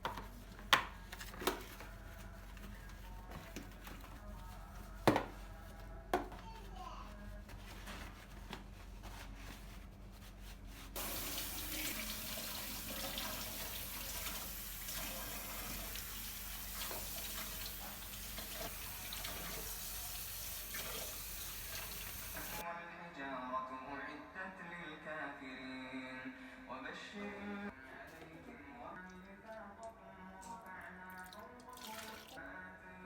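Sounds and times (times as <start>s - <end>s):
tap water running into sink: 11.0s - 22.6s.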